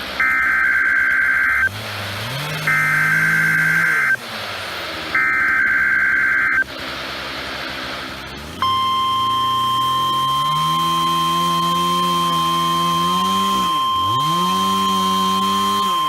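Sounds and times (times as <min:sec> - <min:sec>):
radio hiss: 0:00.0 - 0:08.4
steady warning alarm tone: 0:00.2 - 0:01.7, 0:02.5 - 0:04.2, 0:05.2 - 0:06.6, 0:08.6 - 0:16.0
buzzy digital header bursts: 0:00.2 - 0:04.2, 0:04.8 - 0:06.7, 0:08.6 - 0:16.0.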